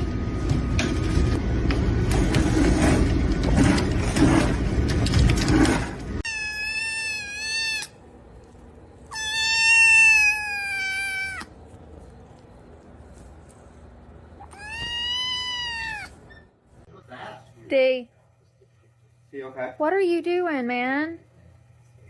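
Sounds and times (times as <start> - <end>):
cat meowing: 6.2 - 8.0, 9.1 - 11.5, 14.4 - 16.2.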